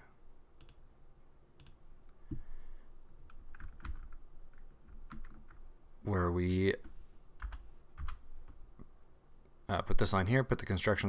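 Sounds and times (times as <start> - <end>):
keyboard and mouse clicks: 0.6 - 0.8, 1.6 - 1.8.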